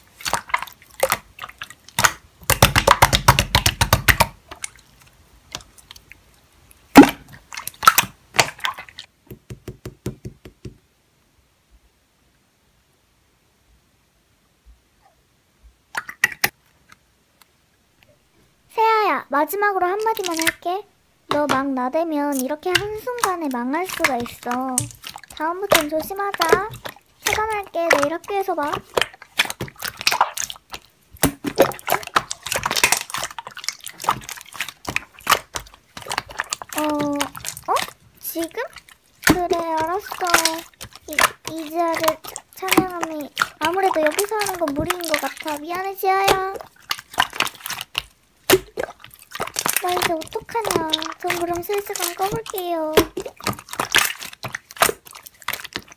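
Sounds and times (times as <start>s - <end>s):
slime squeezed with sticky pops: 0.1s - 4.8s, 6.9s - 9.0s, 20.0s - 20.7s, 22.3s - 55.9s.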